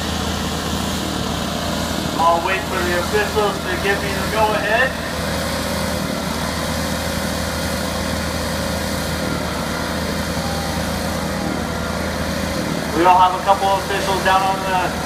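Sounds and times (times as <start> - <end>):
lawnmower engines idling: 0.0 - 15.0.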